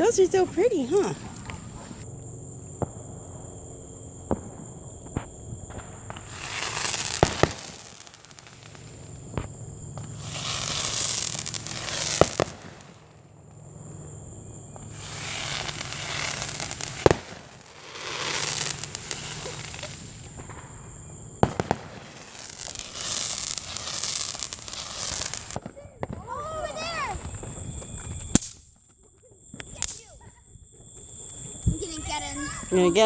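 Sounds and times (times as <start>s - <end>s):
firework bangs: 0.0s - 28.9s, 29.5s - 30.3s
firework crackling and hissing: 0.0s - 33.0s.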